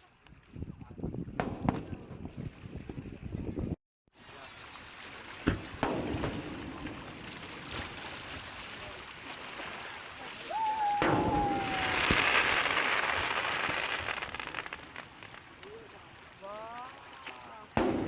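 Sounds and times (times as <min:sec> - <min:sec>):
firework booms: 0:01.4 - 0:02.4, 0:05.4 - 0:07.9, 0:10.6 - 0:16.2, 0:17.6 - 0:18.0
firework crackle: 0:09.6 - 0:18.0
firework whistle: 0:10.5 - 0:15.1.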